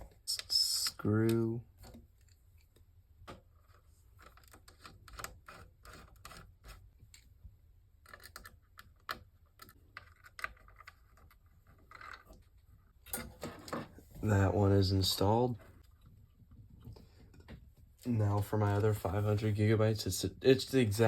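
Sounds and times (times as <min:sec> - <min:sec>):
screwdriver clicking and scratching: 0:03.7 - 0:06.8, 0:08.0 - 0:12.4.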